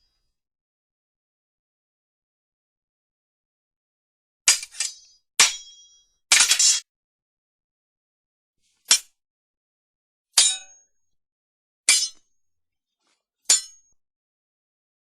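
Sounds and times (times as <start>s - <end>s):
sword blades clashing: 4.5s - 6.8s, 10.4s - 10.7s, 11.9s - 12.2s, 13.5s - 13.9s.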